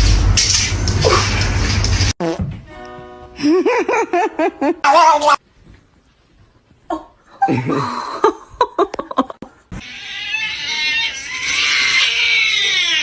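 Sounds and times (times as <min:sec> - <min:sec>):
cat yowling: 0:09.8 - 0:13.0.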